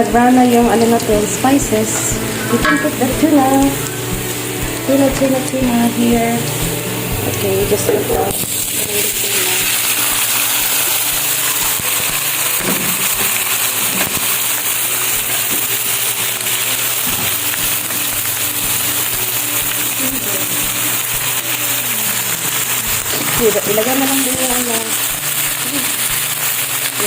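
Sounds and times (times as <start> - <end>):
fish sizzling in hot oil: 0.0 - 27.0.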